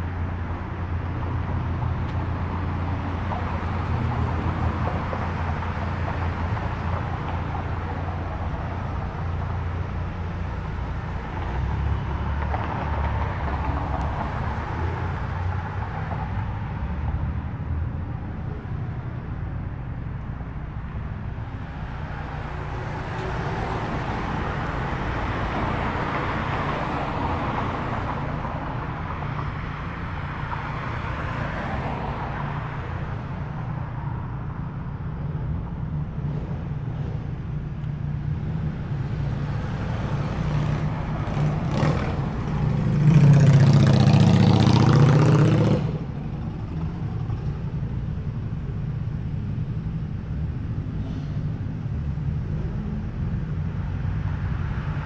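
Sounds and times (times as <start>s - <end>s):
car engines rumbling: 0.0s - 55.0s.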